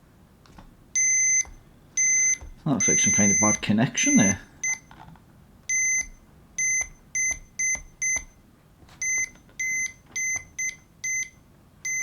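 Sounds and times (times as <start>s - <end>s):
multimeter short high beeps: 1.0s - 4.9s, 5.7s - 8.3s.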